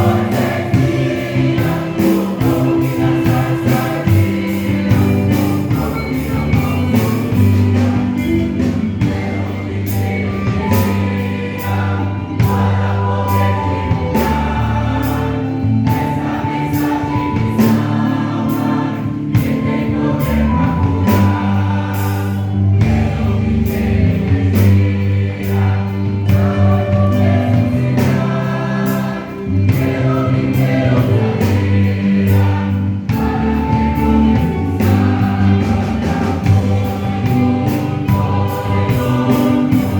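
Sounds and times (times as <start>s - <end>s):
drum beat: 0.0s - 14.5s
bass line: 0.0s - 39.9s
choir singing gospel: 0.0s - 39.9s.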